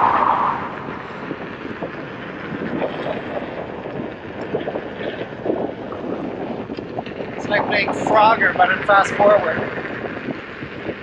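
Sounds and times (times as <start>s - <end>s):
wind rush on helmet microphone: 0.0s - 11.0s.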